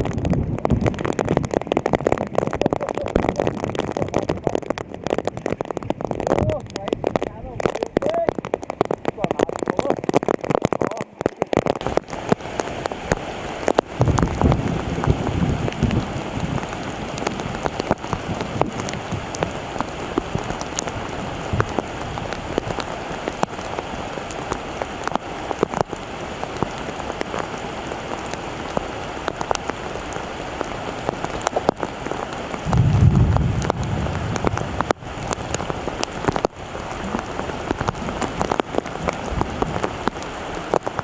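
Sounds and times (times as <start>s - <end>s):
steady rain falling: 0.0s - 41.0s
low rumble: 32.7s - 35.3s.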